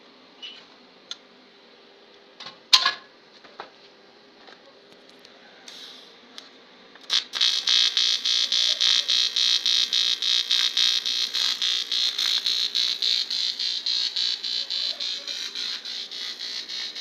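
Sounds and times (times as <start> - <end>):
welding arc crackle: 5.7 - 6.1, 7.0 - 17.0
welding arc buzzing: 7.0 - 17.0.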